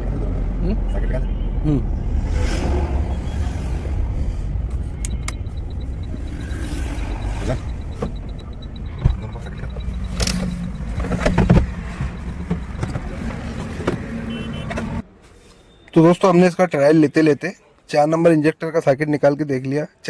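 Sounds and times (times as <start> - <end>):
diesel engine rumbling: 0.0 - 15.1.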